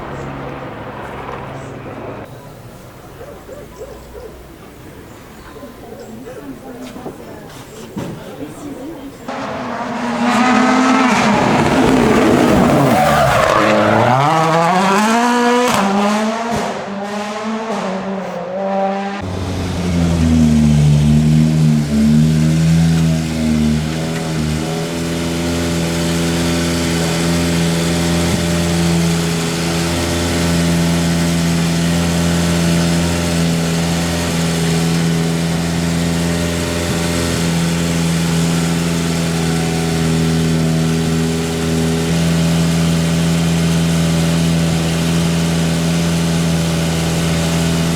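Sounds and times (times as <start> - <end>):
rally car passing at speed: 9.3 - 47.9
engine idling at low revs: 19.2 - 47.9.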